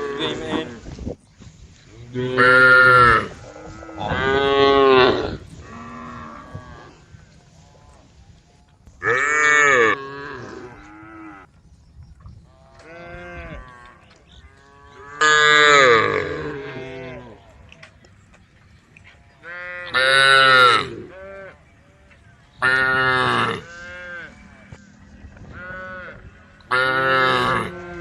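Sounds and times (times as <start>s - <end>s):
cattle mooing: 22.6s - 24.8s, 25.4s - 28.0s.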